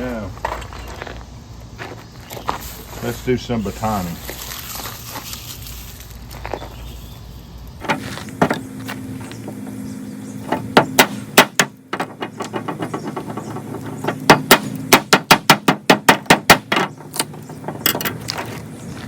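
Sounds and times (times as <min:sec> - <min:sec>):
steady low hum: 0:00.0 - 0:19.0
sharp knocks and taps: 0:10.5 - 0:18.4.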